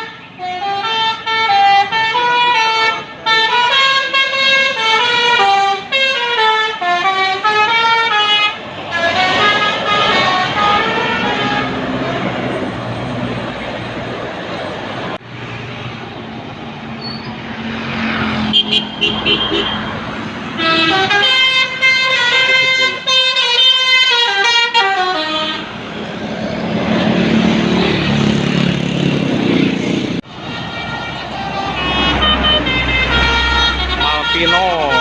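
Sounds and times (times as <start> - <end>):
multi-tone musical bus horn: 0.0 - 12.7, 18.5 - 25.9, 30.4 - 35.0
bus engine and road noise: 0.0 - 35.0.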